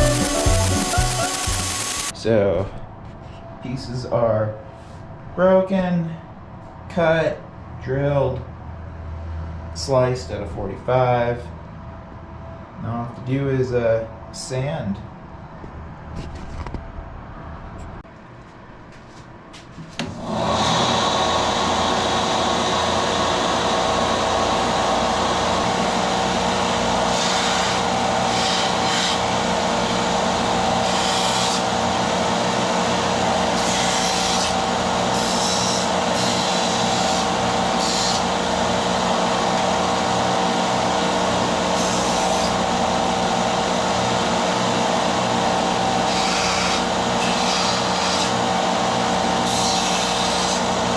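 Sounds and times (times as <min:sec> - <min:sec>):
metal scratching against sander: 0:00.0 - 0:02.1, 0:27.1 - 0:29.4, 0:46.1 - 0:48.4, 0:49.4 - 0:50.7
power sander running: 0:00.0 - 0:02.1, 0:20.1 - 0:50.9.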